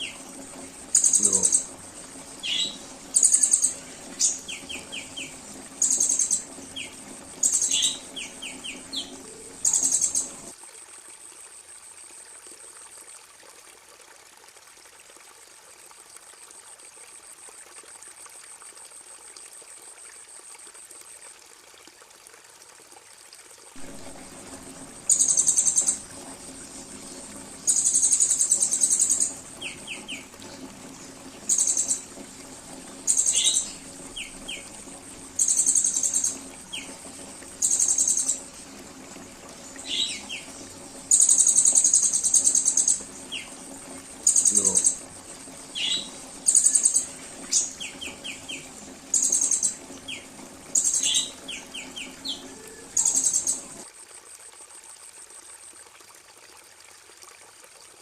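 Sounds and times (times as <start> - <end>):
high buzzy bird trills: 0.0 - 10.5, 23.8 - 53.8
faint background hiss: 23.8 - 53.8.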